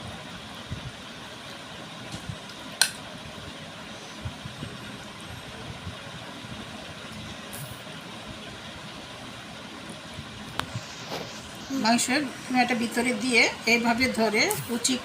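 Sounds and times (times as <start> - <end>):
background rumble and hiss: 0.0 - 15.0.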